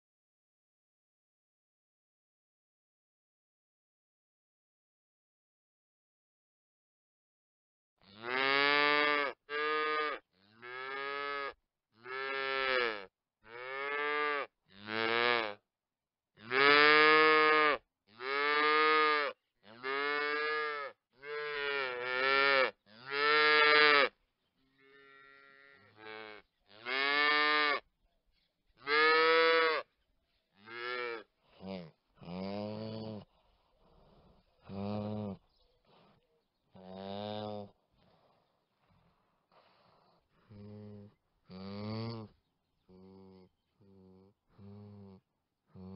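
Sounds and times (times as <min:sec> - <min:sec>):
calves mooing: 0:08.0 - 0:15.6, 0:16.4 - 0:24.1, 0:28.9 - 0:29.8.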